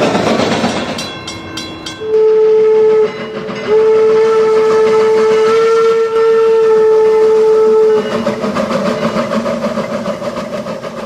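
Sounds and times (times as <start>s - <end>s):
train rumbling: 0.0s - 11.0s
steam locomotive whistle: 2.0s - 9.2s.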